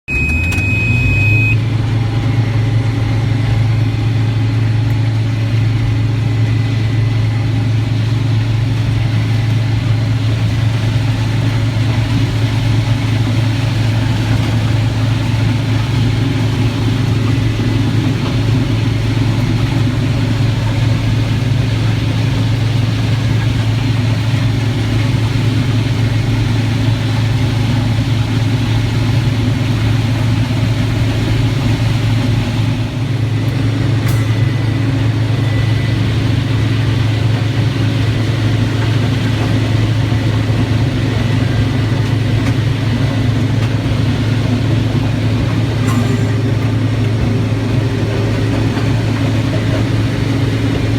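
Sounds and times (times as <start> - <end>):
diesel engine droning: 0.0 - 50.9
short high tone: 45.8 - 48.8.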